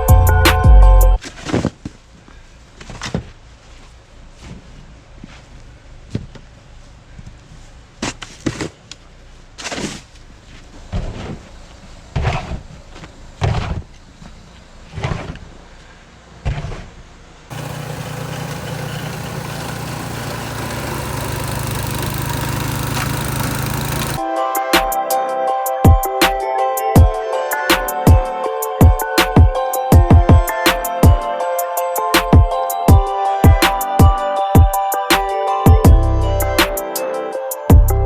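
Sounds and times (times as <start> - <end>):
tractor engine running: 17.5 - 24.2.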